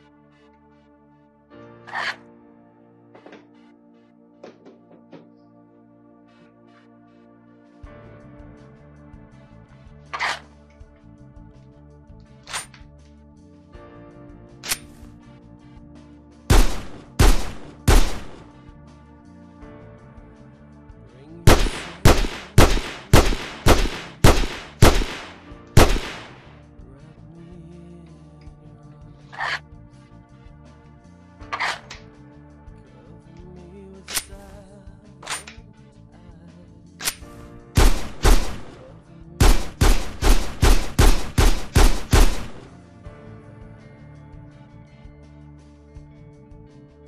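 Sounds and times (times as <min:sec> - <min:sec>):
faint music: 0:00.0 - 0:47.0
gunshot sound effects: 0:16.5 - 0:18.5, 0:21.5 - 0:26.5, 0:37.8 - 0:42.7.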